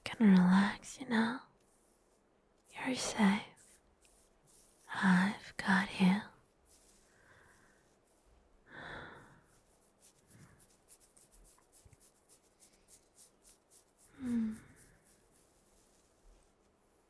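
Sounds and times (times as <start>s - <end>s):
close-up rustling and scratching: 0.0s - 17.0s
hummed sigh: 14.2s - 14.8s.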